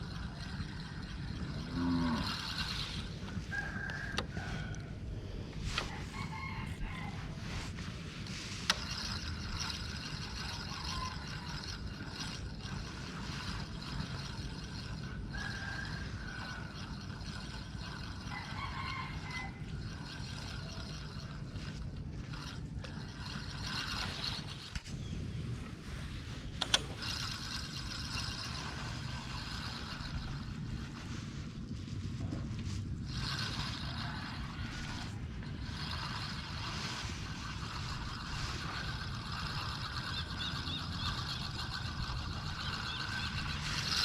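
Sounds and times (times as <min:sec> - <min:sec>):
roosters crowing: 0:00.2 - 0:05.1, 0:05.8 - 0:07.4, 0:14.9 - 0:24.5, 0:33.1 - 0:36.6
low rumble: 0:21.7 - 0:44.0.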